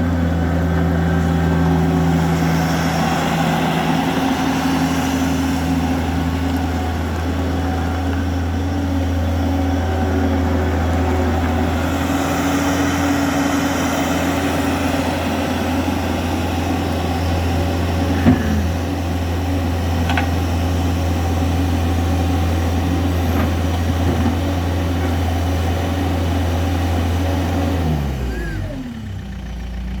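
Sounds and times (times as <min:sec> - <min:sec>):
diesel engine idling: 0:00.0 - 0:30.0
engine winding down: 0:00.0 - 0:30.0.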